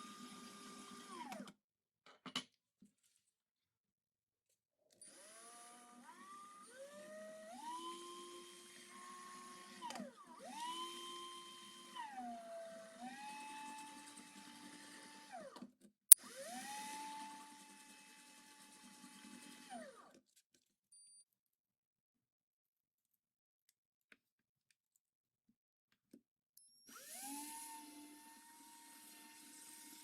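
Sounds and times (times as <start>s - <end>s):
small electric motor whining: 26.9s - 30.0s.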